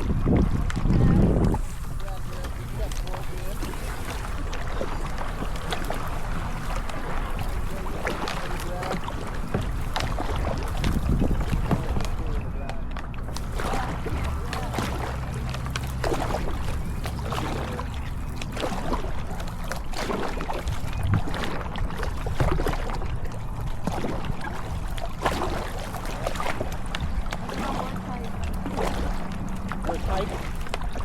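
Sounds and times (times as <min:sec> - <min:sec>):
kayak paddle splashing water: 0:00.0 - 0:31.0
wind rumble on microphone: 0:00.0 - 0:31.0.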